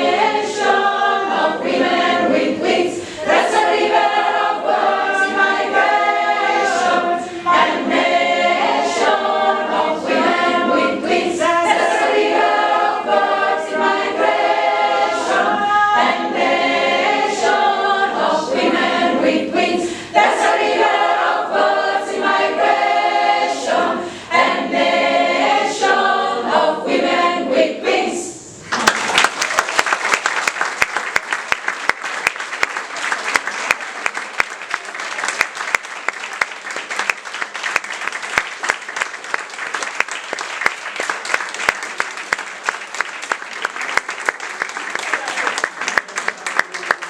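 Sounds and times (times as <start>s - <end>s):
a cappella choir singing: 0.0s - 28.7s
audience applauding: 28.7s - 47.0s.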